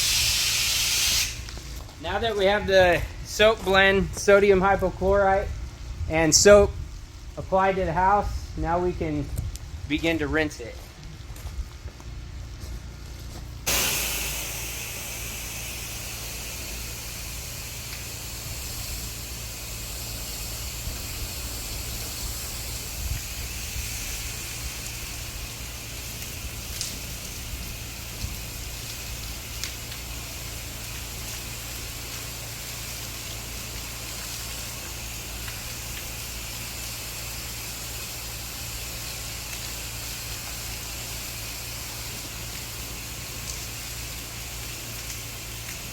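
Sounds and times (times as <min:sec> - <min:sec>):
pressure washer water jet: 0:00.0 - 0:01.7, 0:13.7 - 0:45.9
low machine hum: 0:01.4 - 0:45.9.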